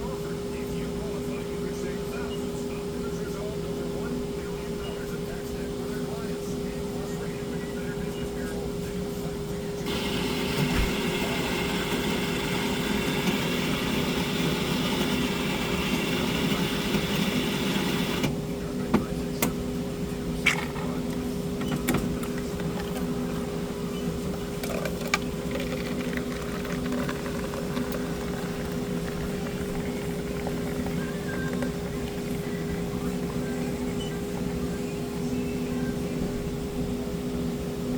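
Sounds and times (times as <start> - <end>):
coffee machine humming: 0.0 - 37.9
coffee machine hissing: 9.8 - 18.3, 20.6 - 36.2.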